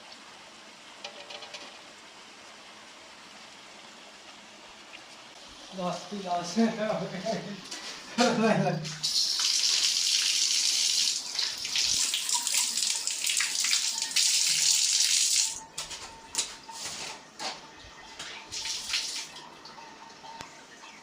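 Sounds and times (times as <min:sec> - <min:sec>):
water drips and splashes: 0:03.4 - 0:21.0
tap water running: 0:04.8 - 0:21.0.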